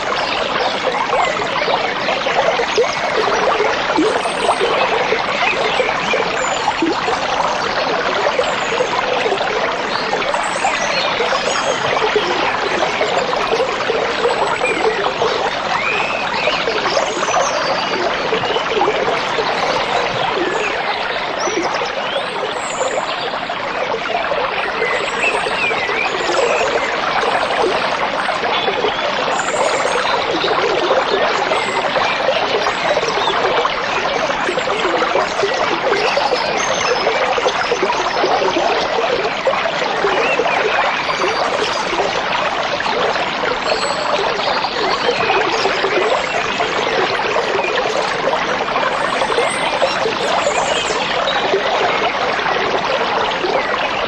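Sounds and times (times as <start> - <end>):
stream babbling over stones: 0.0 - 54.0.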